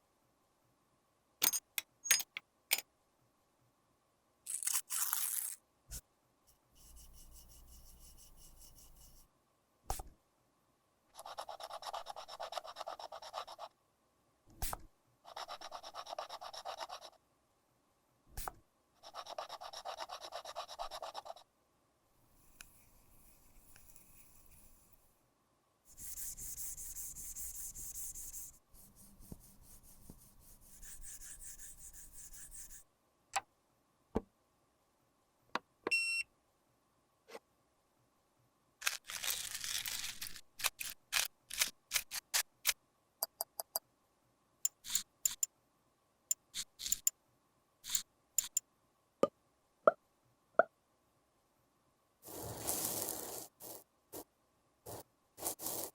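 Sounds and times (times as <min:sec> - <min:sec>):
makeup rubbing and scraping: 0:52.2 - 0:54.3, 0:54.9 - 0:55.9.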